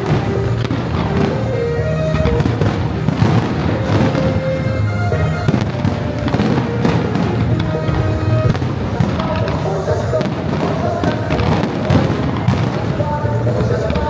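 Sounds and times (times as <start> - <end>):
fireworks crackling: 0.0 - 14.0
loud music: 0.0 - 14.0.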